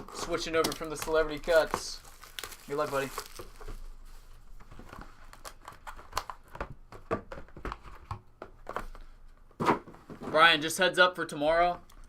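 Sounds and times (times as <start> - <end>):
wrapping crinkling: 0.0 - 6.6.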